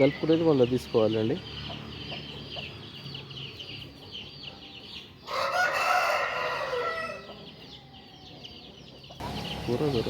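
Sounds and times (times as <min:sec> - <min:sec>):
chickens cheeping: 0:00.0 - 0:10.0
rooster crowing: 0:05.3 - 0:07.4.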